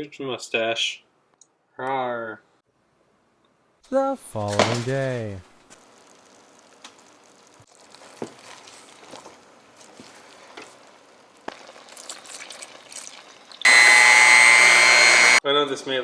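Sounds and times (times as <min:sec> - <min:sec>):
food sizzling: 0:04.2 - 0:14.4.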